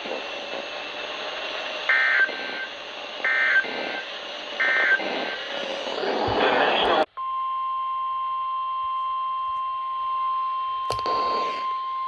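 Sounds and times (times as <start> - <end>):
radio hiss: 0.0 - 7.1, 10.9 - 11.9.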